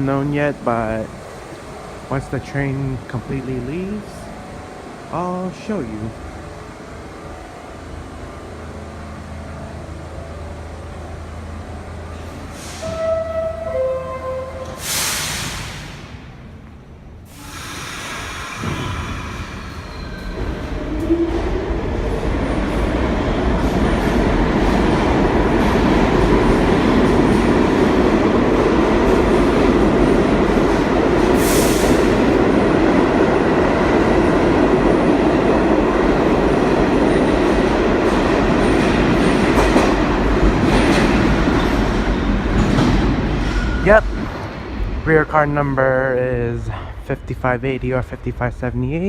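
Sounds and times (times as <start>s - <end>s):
subway train wheels and motors: 0.0s - 49.0s
brief high hiss: 14.7s - 16.1s.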